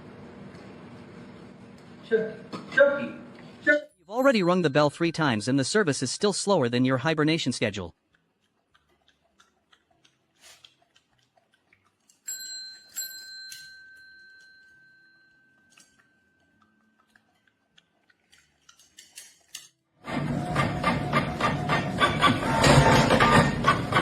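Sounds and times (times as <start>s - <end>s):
desk service bell ringing: 4.1s - 5.6s, 12.3s - 15.7s.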